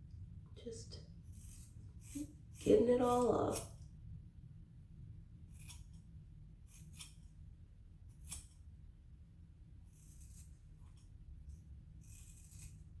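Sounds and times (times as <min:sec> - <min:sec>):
scissors snipping hair: 0:01.4 - 0:03.8, 0:05.6 - 0:06.0, 0:06.7 - 0:07.3, 0:08.2 - 0:08.6, 0:12.0 - 0:12.9.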